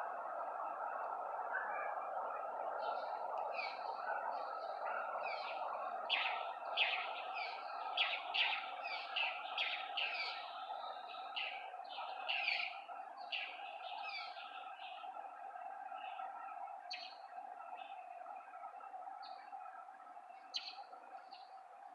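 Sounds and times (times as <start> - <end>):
birds chirping: 2.8 - 19.5, 20.3 - 21.6.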